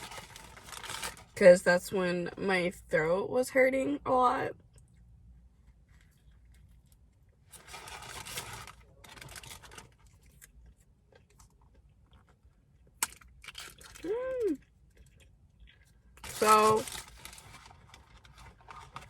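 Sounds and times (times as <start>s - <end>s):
paper wrapping rustling and tearing: 0.0s - 1.4s, 7.5s - 10.3s, 16.2s - 19.0s.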